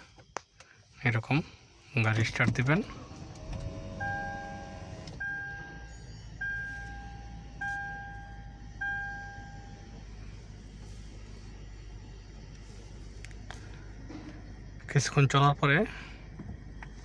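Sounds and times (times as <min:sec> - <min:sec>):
car engine starting and idling: 0:00.0 - 0:17.0
dashboard warning chime: 0:04.0 - 0:10.0.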